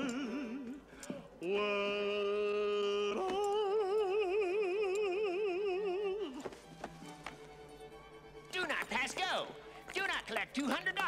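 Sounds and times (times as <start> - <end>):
man singing operatic notes: 1.4 - 6.5.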